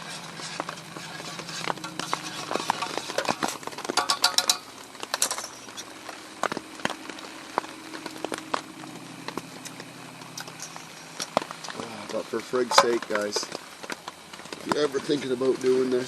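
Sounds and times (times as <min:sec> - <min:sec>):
metal cookware clinking: 0:01.7 - 0:05.8, 0:12.7 - 0:13.5.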